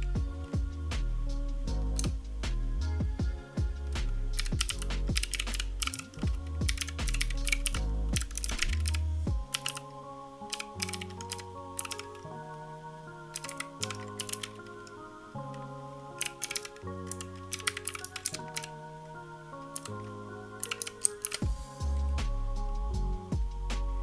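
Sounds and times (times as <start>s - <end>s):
background music with heavy bass: 0.0s - 24.0s
mechanical keyboard key clicks: 4.4s - 9.8s, 10.5s - 12.2s, 13.4s - 14.5s, 16.2s - 18.7s, 19.8s - 20.0s, 20.6s - 21.4s.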